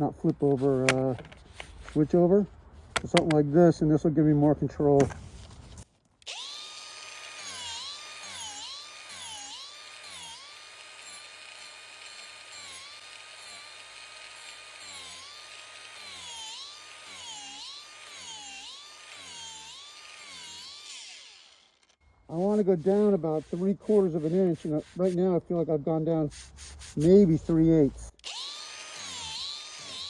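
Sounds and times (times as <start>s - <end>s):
gritty grinding on wood: 0.2s - 3.5s, 7.4s - 30.0s
power carving grinder motor whine: 6.3s - 22.0s, 28.2s - 30.0s.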